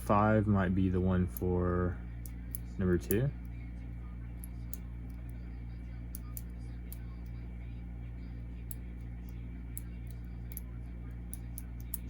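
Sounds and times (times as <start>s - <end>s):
low electrical hum: 0.0s - 12.0s
padlock number wheels clicking: 8.6s - 12.0s.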